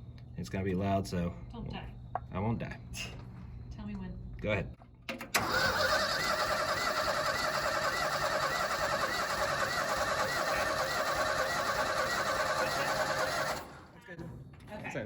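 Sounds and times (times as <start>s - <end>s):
engine cranking with starter: 5.1s - 14.0s.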